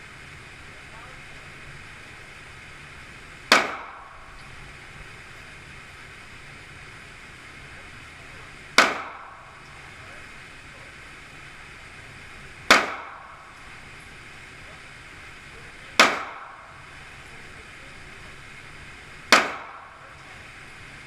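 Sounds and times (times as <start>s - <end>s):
pistol shots: 3.5s - 4.6s, 8.7s - 9.8s, 12.6s - 13.8s, 16.0s - 17.0s, 19.3s - 20.3s.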